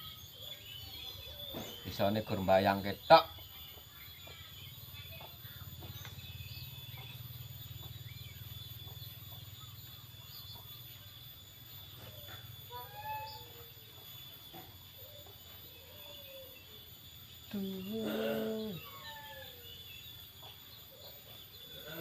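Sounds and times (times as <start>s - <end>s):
bird chirps: 0.0s - 22.0s
gliding animal call: 12.6s - 13.8s.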